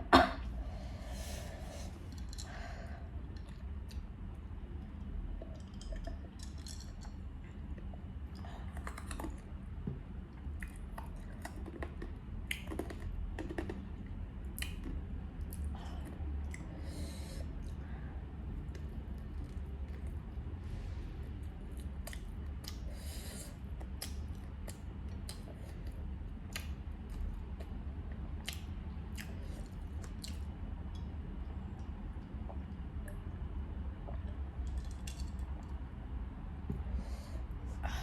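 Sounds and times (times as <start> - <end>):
low steady hum: 0.0 - 38.0
chewing with small clicks: 3.3 - 9.5, 10.3 - 16.7, 21.6 - 22.9, 23.5 - 33.3.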